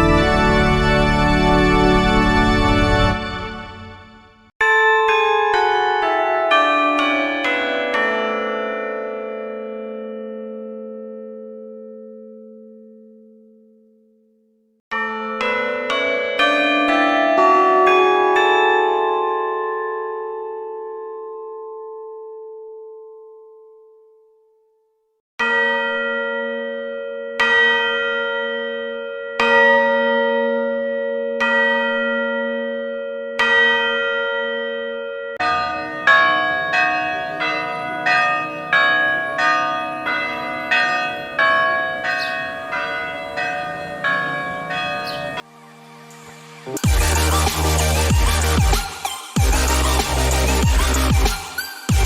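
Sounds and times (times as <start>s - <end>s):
church bell tolling: 0.0s - 3.9s, 4.6s - 13.8s, 14.9s - 23.2s, 25.4s - 45.5s
several bells ringing: 4.6s - 13.1s, 14.9s - 22.0s, 25.4s - 45.4s, 46.8s - 52.0s.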